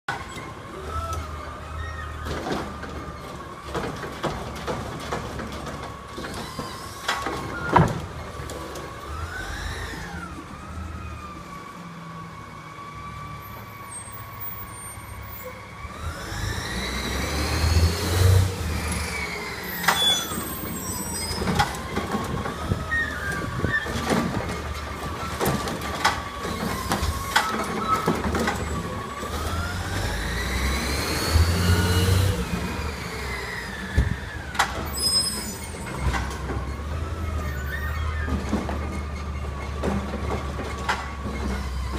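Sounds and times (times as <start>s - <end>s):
clunks and knocks: 2.2s - 8.9s, 21.3s - 29.4s, 35.8s - 36.8s, 38.2s - 41.9s.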